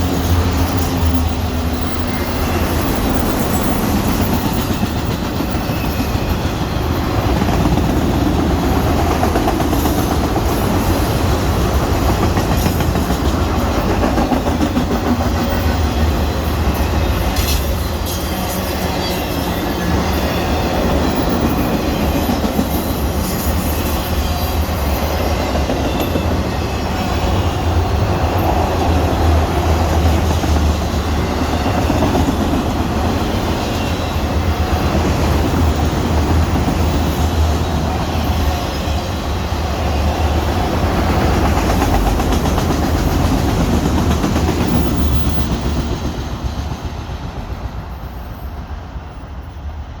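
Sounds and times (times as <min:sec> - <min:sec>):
freight train wheels clacking on rails: 0:00.0 - 0:49.8.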